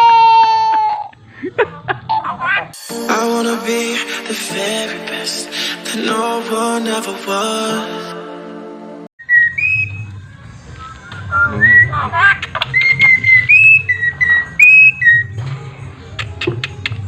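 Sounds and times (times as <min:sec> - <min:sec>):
bird whistling clear notes: 0:09.3 - 0:10.1
harsh bird chattering calls: 0:11.7 - 0:15.3.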